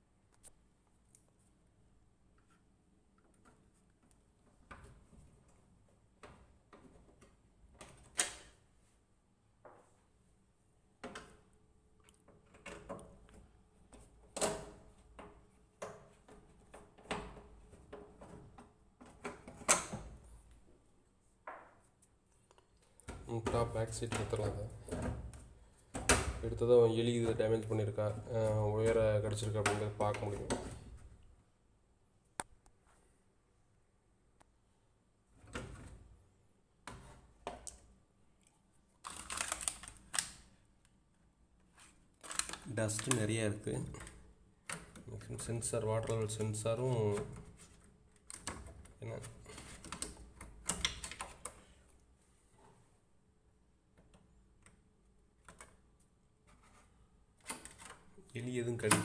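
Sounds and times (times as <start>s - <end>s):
plastic panels knocking and clicking: 12.3s - 20.2s, 23.0s - 28.2s, 28.8s - 31.0s
plastic cover clicking and rattling: 39.0s - 40.4s, 42.2s - 43.2s, 49.5s - 51.5s.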